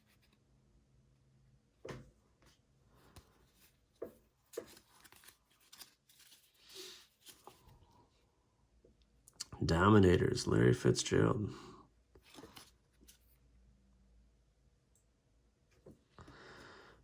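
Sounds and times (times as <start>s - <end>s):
trading cards being flipped: 4.0s - 7.6s, 12.2s - 13.3s.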